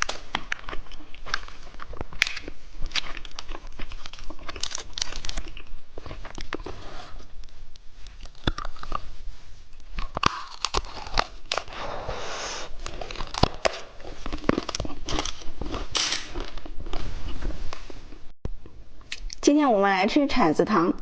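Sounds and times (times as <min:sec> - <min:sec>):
plastic packaging crinkling: 0:00.0 - 0:06.7, 0:09.8 - 0:11.8, 0:12.7 - 0:17.8
candy biting and crunching: 0:00.0 - 0:07.4, 0:08.2 - 0:09.1, 0:09.7 - 0:17.0.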